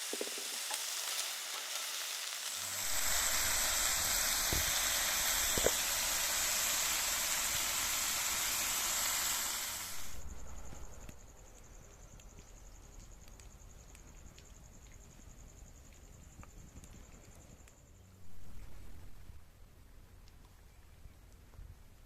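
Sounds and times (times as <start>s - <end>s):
pork sizzling in a pan: 0.0s - 11.0s
crickets trilling: 0.0s - 19.5s.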